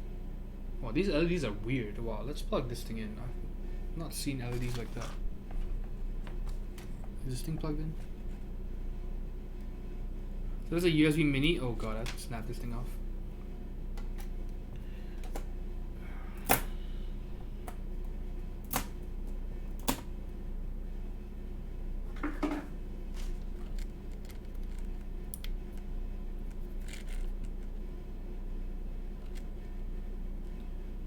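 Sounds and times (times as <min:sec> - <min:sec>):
low steady hum: 0:00.0 - 0:31.0.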